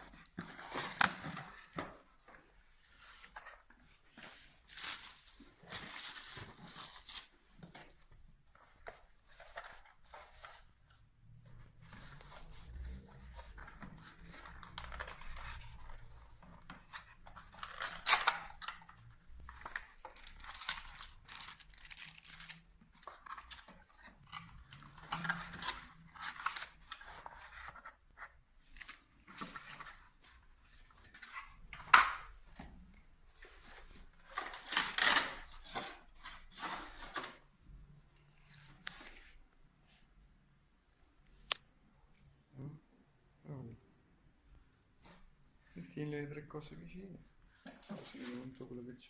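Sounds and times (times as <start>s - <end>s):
packaging rustling and tearing: 16.9s - 27.8s, 33.4s - 37.5s.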